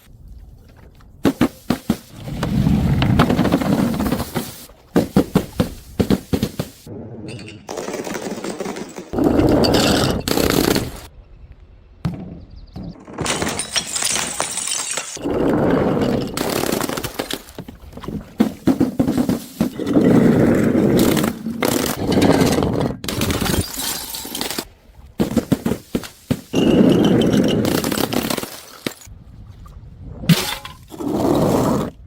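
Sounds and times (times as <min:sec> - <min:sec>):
broken glass crunching and scraping: 0:13.0 - 0:17.7, 0:23.1 - 0:29.1
glass bottles smashing: 0:13.2 - 0:17.5, 0:23.2 - 0:24.6.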